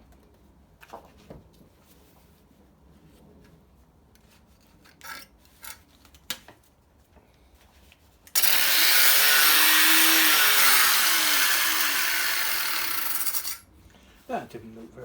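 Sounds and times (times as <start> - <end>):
angle grinder cutting metal: 8.4 - 13.6.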